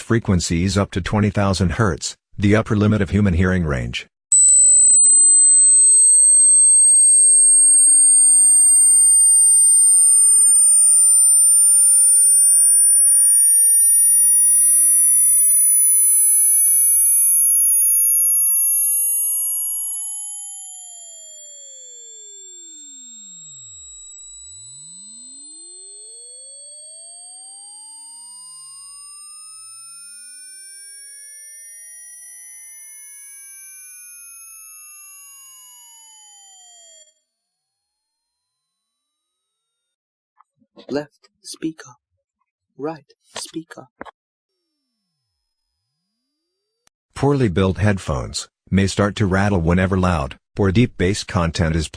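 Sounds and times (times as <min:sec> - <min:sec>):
rising high-pitched sine tone: 0:04.4 - 0:37.4.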